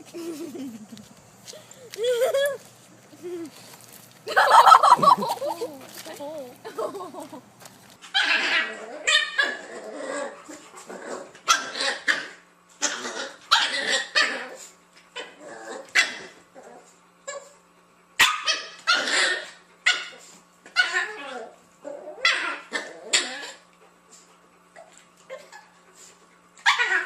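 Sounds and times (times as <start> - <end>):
dog barking and yipping: 18.2 - 21.2, 26.6 - 27.0.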